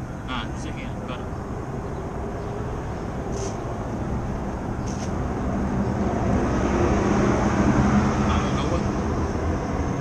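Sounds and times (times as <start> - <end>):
road traffic rumble: 0.0 - 10.0
short high squeaks: 3.3 - 3.6.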